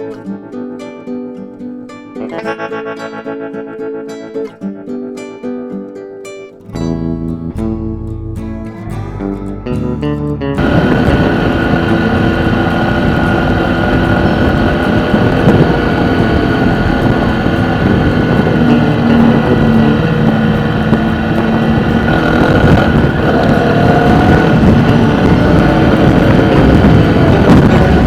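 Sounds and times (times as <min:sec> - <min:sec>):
car engine and road noise: 0:10.6 - 0:28.0.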